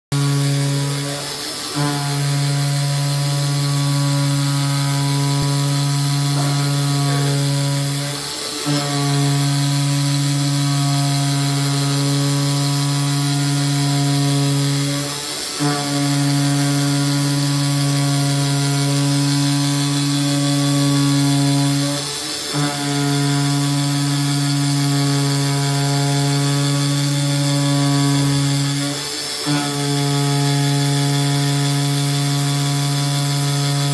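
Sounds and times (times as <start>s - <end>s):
cutter low mechanical buzz: 0.1s - 33.9s.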